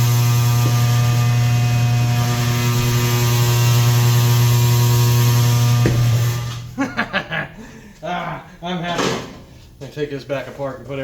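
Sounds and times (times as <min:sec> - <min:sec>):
electric motor humming: 0:00.0 - 0:06.8.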